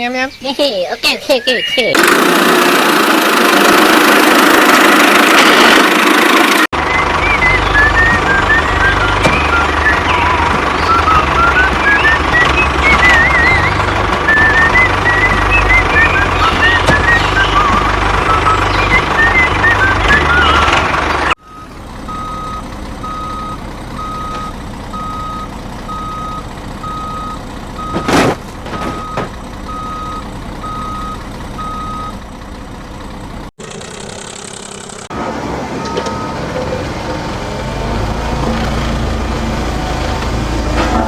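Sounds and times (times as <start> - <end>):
reversing alarm beeps: 7.4 - 28.2, 28.8 - 32.2, 35.8 - 36.4.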